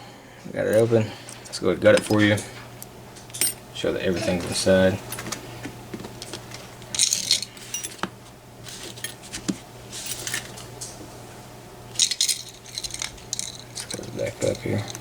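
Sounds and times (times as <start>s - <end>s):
brass lock parts clinking: 6.8s - 8.0s, 11.9s - 15.0s.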